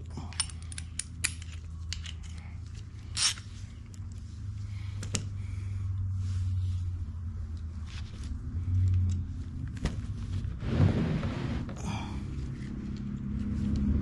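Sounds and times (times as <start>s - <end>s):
steady low hum: 0.0s - 14.0s
metallic clicks of hand tools: 0.2s - 2.5s
hand tool scraping: 10.6s - 11.9s.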